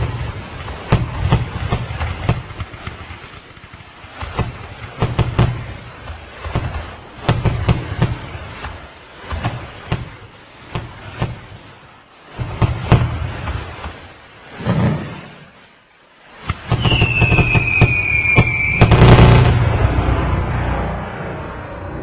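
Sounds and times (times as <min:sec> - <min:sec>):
firework pops and bangs: 0:00.0 - 0:11.7, 0:12.3 - 0:15.5, 0:16.4 - 0:19.6
crackling bangs: 0:00.0 - 0:20.8
descending whistle: 0:16.8 - 0:19.0.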